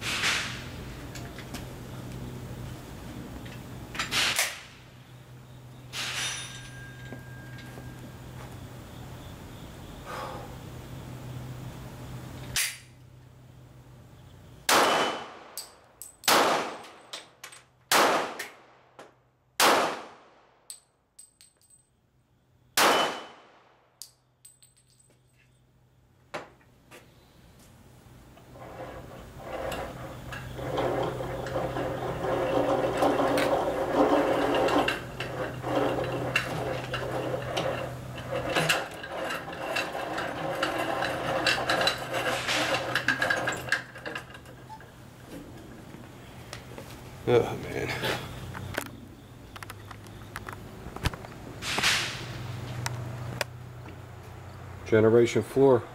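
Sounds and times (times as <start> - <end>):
pistol shots: 14.7 - 15.6, 16.3 - 16.9, 17.9 - 18.7, 19.6 - 20.3, 22.8 - 23.7.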